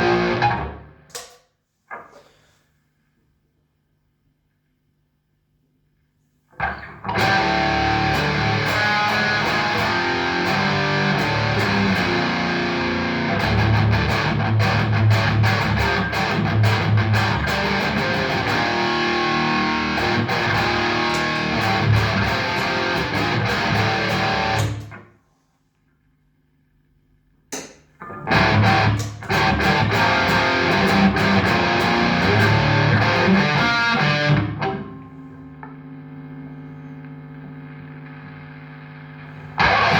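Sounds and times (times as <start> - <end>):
amp hum: 0.0 - 1.2, 3.3 - 25.1, 25.7 - 39.9
overdriven electric guitar: 0.0 - 1.2, 6.6 - 25.0, 28.0 - 36.4, 38.8 - 39.9.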